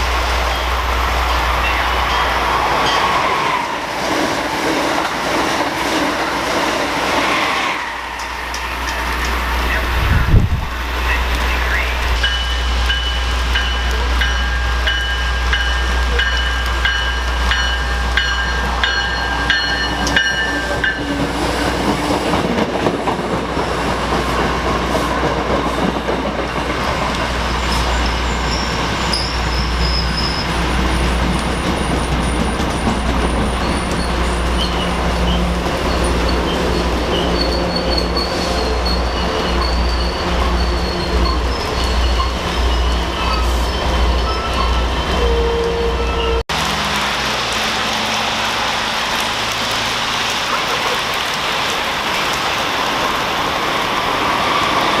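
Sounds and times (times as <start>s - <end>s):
train rumbling on rails: 0.0s - 55.0s
high wheel squeals: 27.4s - 46.4s.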